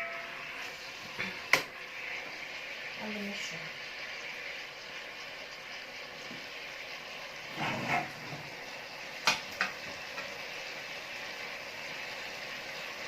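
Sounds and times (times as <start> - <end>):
beef sizzling in a pot: 0.0 - 13.0
spoon scraping a pot: 7.5 - 8.4.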